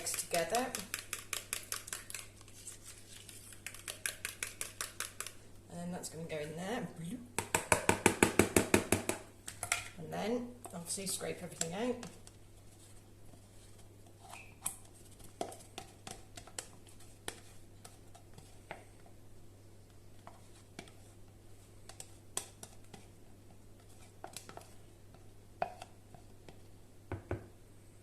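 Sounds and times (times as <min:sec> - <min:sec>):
low steady hum: 0:00.0 - 0:07.5.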